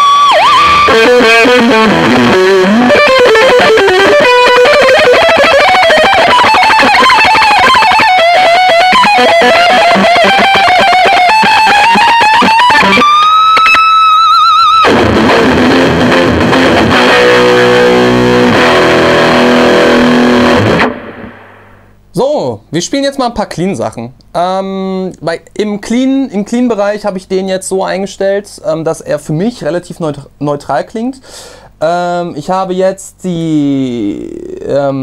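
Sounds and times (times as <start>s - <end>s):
overdriven electric guitar solo: 0.0s - 21.9s.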